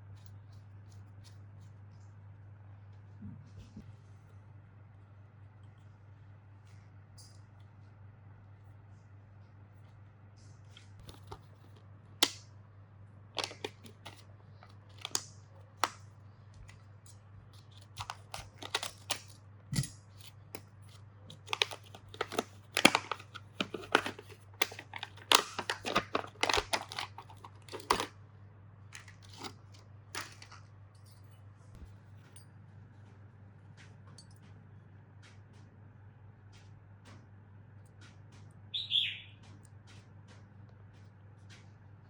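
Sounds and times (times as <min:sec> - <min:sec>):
faint low hum: 0:00.0 - 0:42.0
clicks and scrapes of small parts: 0:13.4 - 0:28.1, 0:28.9 - 0:31.4.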